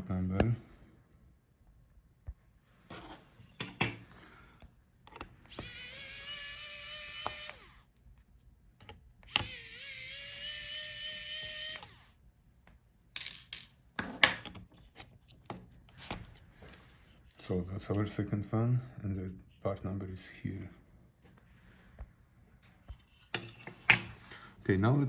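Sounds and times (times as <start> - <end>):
electric screwdriver whine: 5.4 - 7.9, 9.2 - 12.2.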